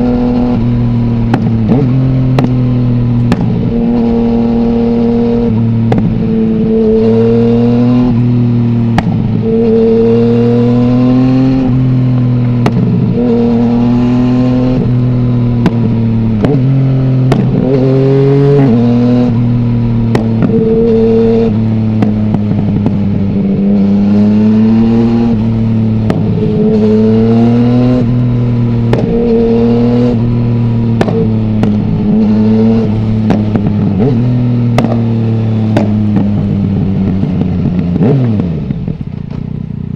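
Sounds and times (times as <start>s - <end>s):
motorcycle engine revving: 0.0s - 39.9s
exhaust cracks: 0.3s - 4.1s, 8.1s - 9.5s, 11.6s - 17.9s, 18.6s - 26.9s, 27.9s - 39.8s.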